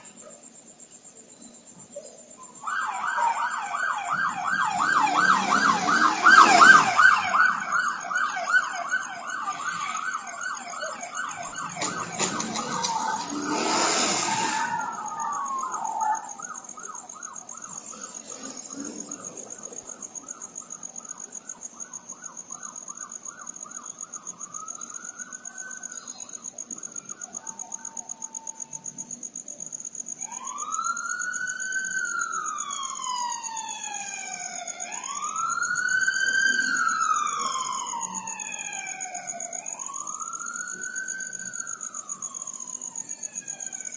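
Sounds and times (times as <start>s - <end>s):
pulsing siren yelp: 2.4s - 29.0s, 30.2s - 43.9s
wailing siren: 2.6s - 29.0s, 30.2s - 43.9s
loud burst of noise: 12.0s - 15.1s.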